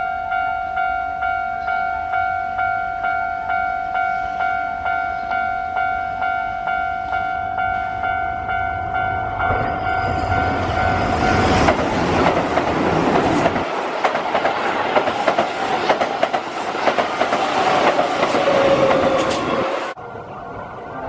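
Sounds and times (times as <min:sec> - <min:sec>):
train whine dropping in pitch: 0:00.0 - 0:13.6, 0:16.6 - 0:21.0
train wheels clattering over joints: 0:11.5 - 0:19.7.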